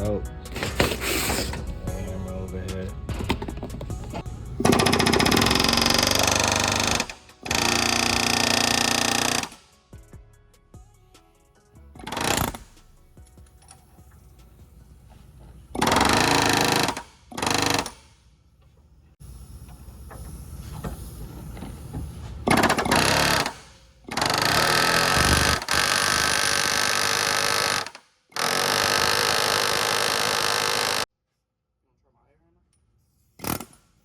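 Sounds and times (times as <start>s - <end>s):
power tool hammering: 4.6s - 9.7s, 15.8s - 18.2s, 22.5s - 31.1s.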